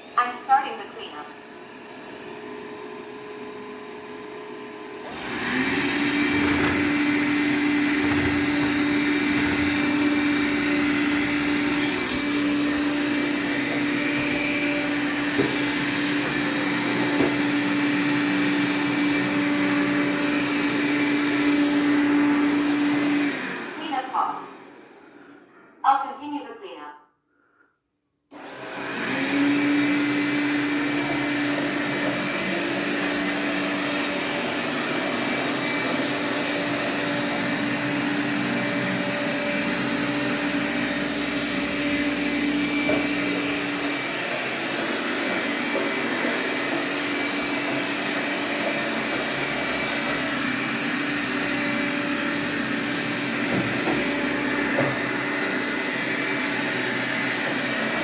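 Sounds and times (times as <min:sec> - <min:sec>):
robot vacuum suction fan: 0:00.1 - 0:25.7, 0:28.3 - 0:58.0.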